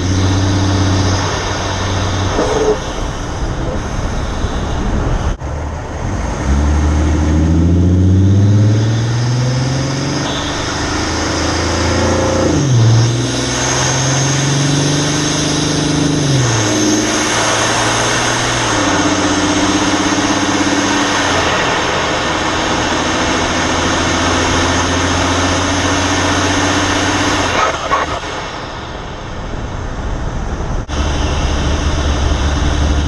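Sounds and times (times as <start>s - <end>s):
truck engine accelerating: 0.0s - 33.0s
high turbo whistle: 8.1s - 18.3s, 30.9s - 33.0s.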